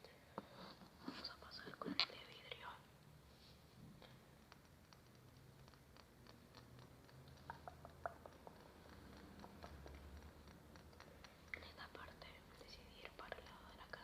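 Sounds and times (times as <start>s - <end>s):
small clicks and taps: 4.0s - 14.0s.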